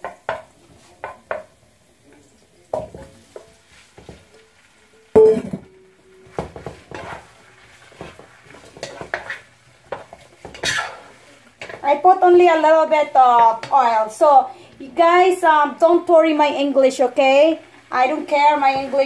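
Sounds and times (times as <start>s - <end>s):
dishes knocking and clattering: 5.2s - 7.0s.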